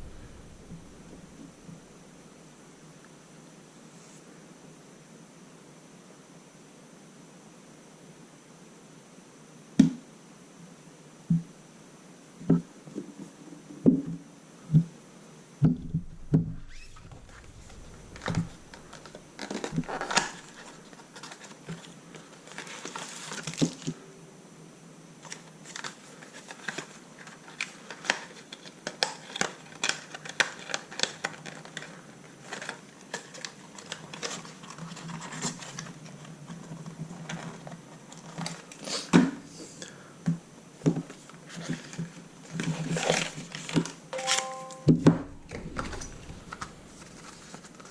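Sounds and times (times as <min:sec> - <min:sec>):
packaging crinkling and rustling: 0:17.1 - 0:23.9, 0:25.2 - 0:38.8, 0:41.2 - 0:44.0.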